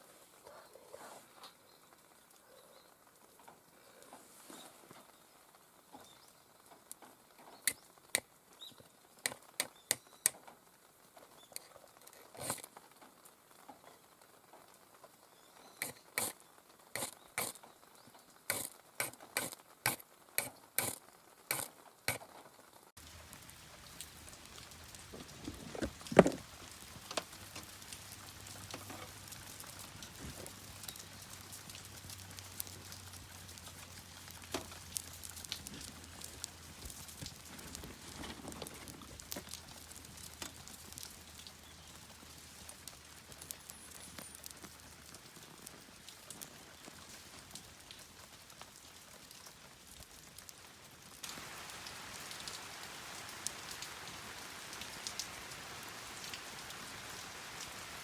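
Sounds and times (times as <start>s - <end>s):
steady rain falling: 22.6s - 58.0s.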